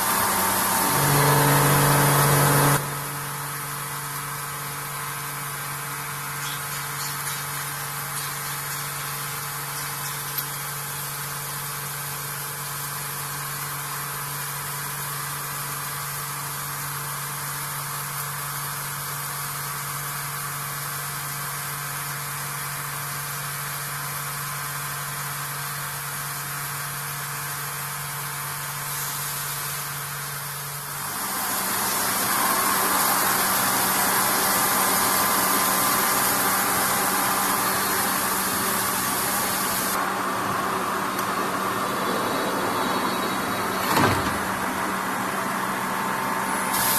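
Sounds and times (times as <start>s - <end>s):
milling machine hum: 0.0s - 13.3s, 28.3s - 46.9s
strong hiss: 28.6s - 40.1s, 46.4s - 46.9s.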